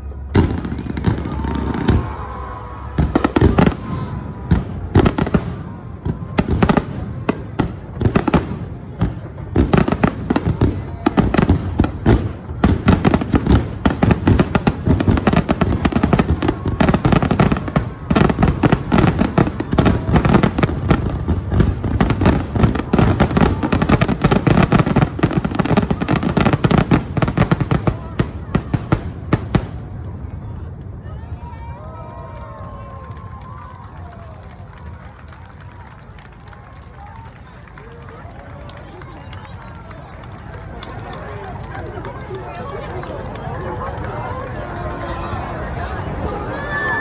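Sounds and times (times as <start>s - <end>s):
fireworks bursting: 0.1s - 30.2s.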